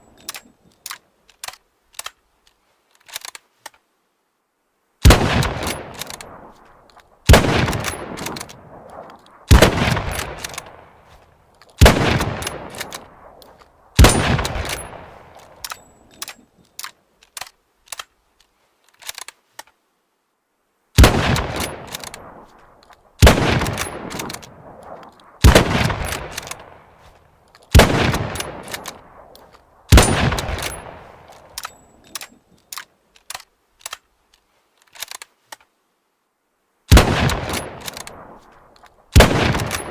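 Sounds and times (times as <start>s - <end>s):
small sharp clicks: 0.1s - 3.9s, 10.0s - 19.8s, 21.4s - 35.8s, 37.2s - 39.9s
rifle shots echoing: 5.0s - 11.0s, 11.8s - 15.8s, 21.0s - 27.1s, 27.7s - 31.8s, 36.9s - 39.9s.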